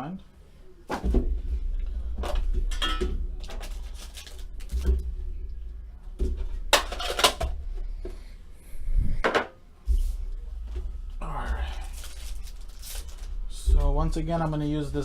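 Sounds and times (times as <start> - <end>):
steady low hum: 0.0 - 15.0
card packaging and tin handled: 2.2 - 5.0, 11.6 - 13.7.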